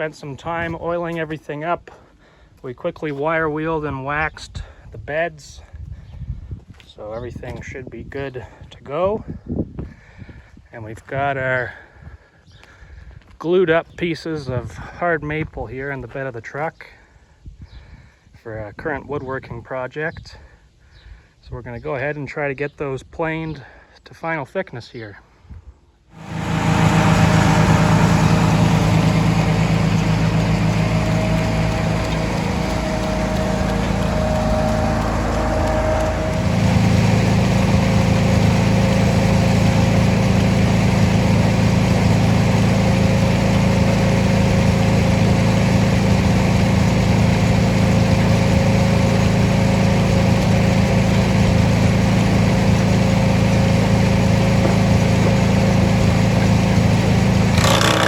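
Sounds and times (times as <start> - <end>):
tractor engine running: 0.0 - 1.5, 26.2 - 58.0.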